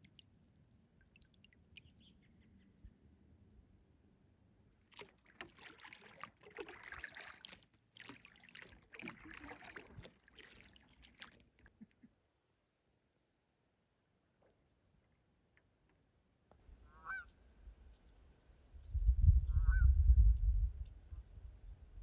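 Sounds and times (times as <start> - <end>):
water dripping: 0.0 - 2.2, 4.9 - 11.7
kayak paddle strokes in water: 4.9 - 11.6.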